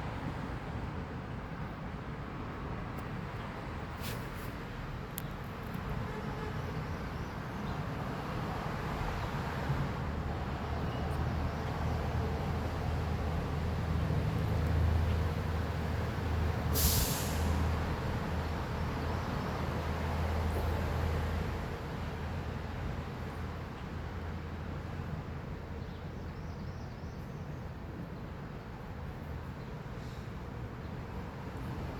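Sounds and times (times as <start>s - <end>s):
short loud hiss: 4.0s - 4.5s, 16.8s - 17.6s.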